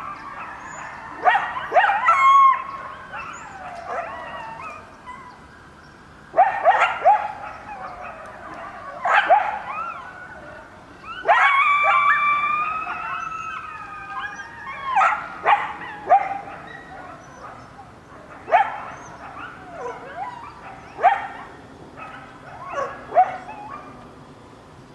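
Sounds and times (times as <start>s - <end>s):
coyote group howl: 0.0s - 24.1s
coyotes yipping and barking: 0.0s - 24.1s
sirens: 7.3s - 15.8s.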